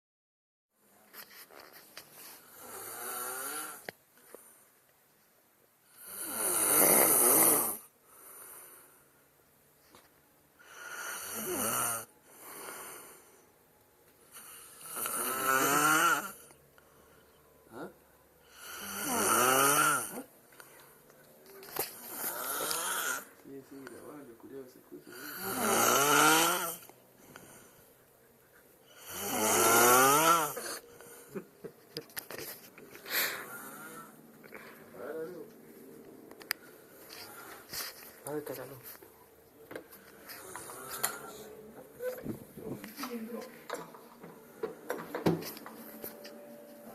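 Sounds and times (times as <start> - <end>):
man snoring heavily: 2.5 - 3.8, 6.0 - 8.8, 10.6 - 13.3, 14.4 - 16.4, 18.5 - 20.3, 22.0 - 23.3, 25.1 - 26.9, 28.9 - 30.8, 33.2 - 34.2, 40.4 - 41.5
quiet breath out: 32.9 - 35.2.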